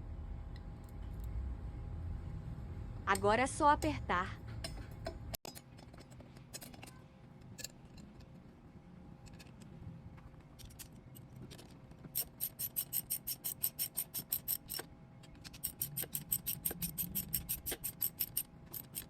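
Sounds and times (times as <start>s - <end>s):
ratchet wrench clicking: 12.2s - 19.0s.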